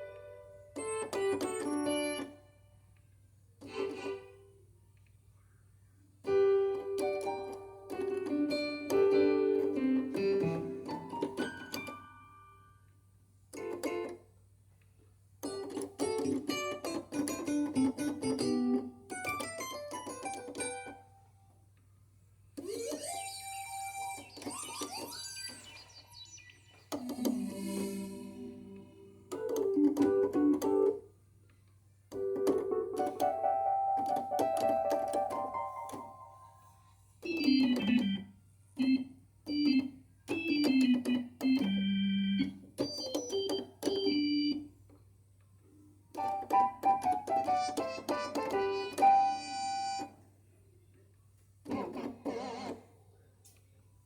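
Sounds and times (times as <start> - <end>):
organ-like keyboard chords: 0.0 - 2.7, 6.2 - 12.7, 13.5 - 14.3, 15.4 - 21.2, 22.6 - 31.2, 32.0 - 44.9, 46.1 - 50.2
plucked guitar-like keyboard notes: 6.3 - 11.9, 46.2 - 49.8
synth notes sliding up: 22.7 - 29.3.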